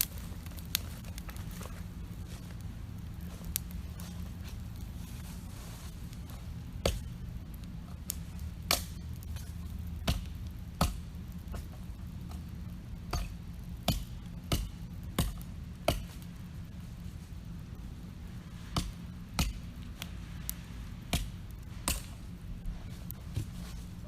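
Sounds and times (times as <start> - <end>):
steady low rumble: 0.0 - 24.0
axe splitting sticks: 8.6 - 11.7, 18.8 - 19.7, 21.1 - 22.2.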